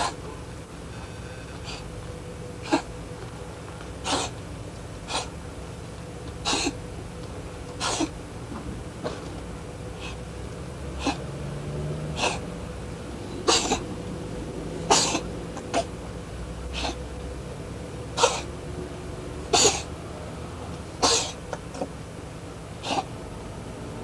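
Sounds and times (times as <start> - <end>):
cat coughing: 0.0 - 0.2, 2.6 - 2.9, 4.0 - 4.4, 5.1 - 5.3, 6.4 - 6.8, 7.8 - 8.2, 11.0 - 11.2, 12.2 - 12.4, 13.4 - 13.9, 14.9 - 15.9, 16.7 - 17.0, 18.2 - 18.5, 19.5 - 19.9, 21.0 - 21.5, 22.8 - 23.1.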